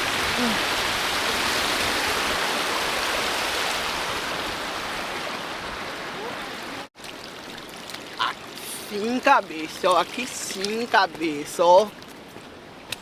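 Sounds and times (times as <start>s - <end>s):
flowing water rushing: 0.0s - 13.0s.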